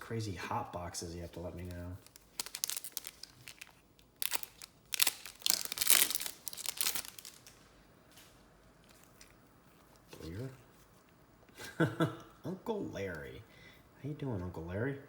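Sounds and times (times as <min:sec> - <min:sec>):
foil wrapper tearing and crinkling: 0:01.6 - 0:07.6.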